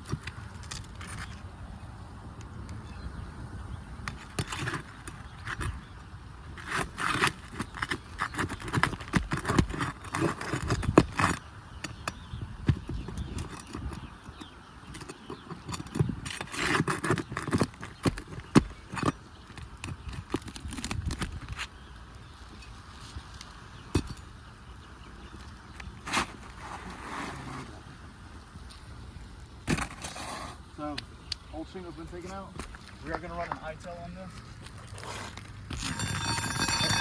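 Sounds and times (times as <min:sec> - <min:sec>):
metal tool scraping shingles: 0:13.0 - 0:19.2, 0:34.9 - 0:37.0.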